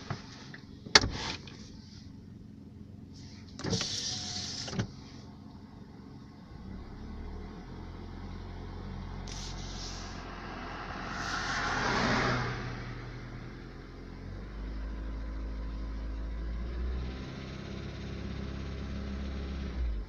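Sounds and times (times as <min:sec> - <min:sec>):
car engine running: 0:00.0 - 0:20.0
short whir: 0:09.2 - 0:13.7.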